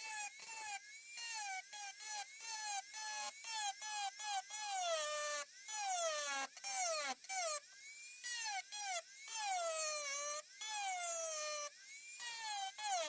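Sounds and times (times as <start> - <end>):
rotary tool cutting steel: 9.4 - 13.0.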